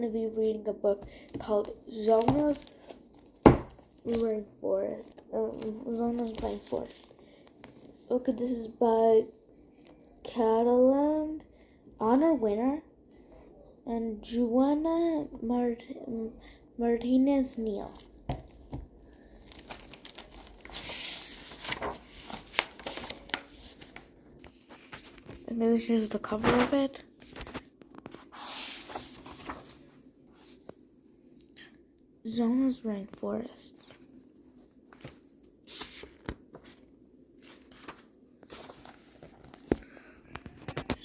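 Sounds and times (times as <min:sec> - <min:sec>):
book pages rustling: 0:01.0 - 0:08.4, 0:17.8 - 0:30.8, 0:33.7 - 0:41.0.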